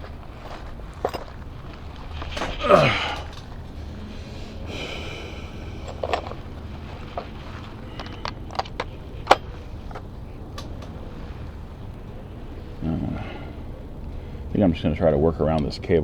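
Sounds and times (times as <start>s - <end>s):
brief rustle: 0.0s - 4.3s
steady low hum: 0.0s - 16.0s
metal tools clicking and knocking: 5.6s - 11.0s.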